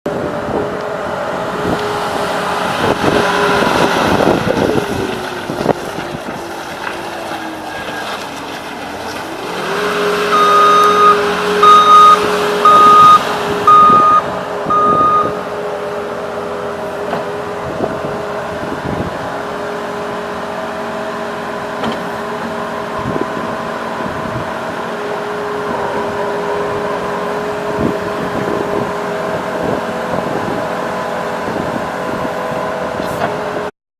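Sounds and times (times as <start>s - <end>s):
diesel engine high revs: 0.1s - 33.7s
backup alarm beeping: 10.3s - 15.4s.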